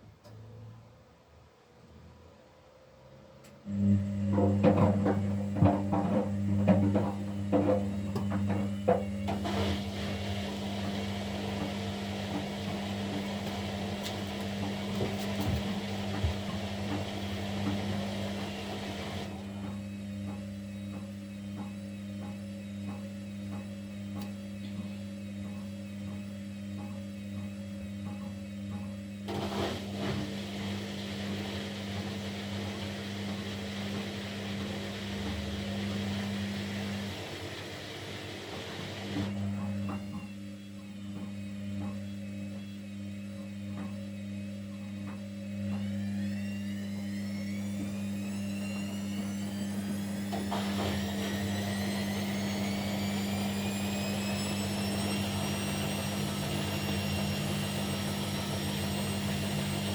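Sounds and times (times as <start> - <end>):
washing machine motor hum: 3.6 - 59.9
washing machine drum churning: 4.3 - 21.6, 29.3 - 40.2, 45.1 - 59.9.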